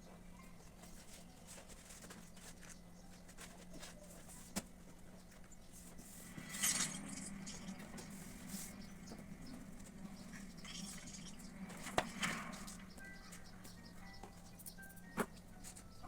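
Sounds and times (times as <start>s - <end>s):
steady low hum: 0.0s - 16.0s
paper and cardboard rustling: 0.7s - 6.8s.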